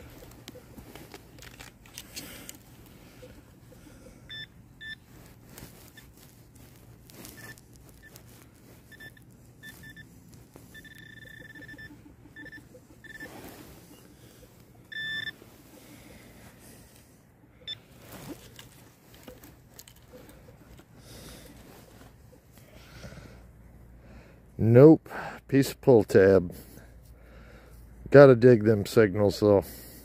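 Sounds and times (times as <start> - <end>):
digging in soil: 0.0 - 23.4
metal detector beeping: 3.1 - 5.1, 5.8 - 6.2, 7.2 - 15.8, 17.6 - 20.8.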